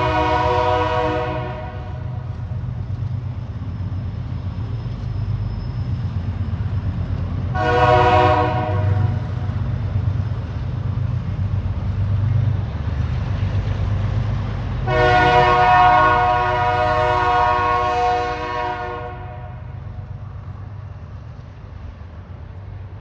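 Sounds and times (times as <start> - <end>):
locomotive air horn blast: 0.0 - 2.2, 7.5 - 9.3, 14.8 - 19.8
freight train rumbling: 0.0 - 23.0.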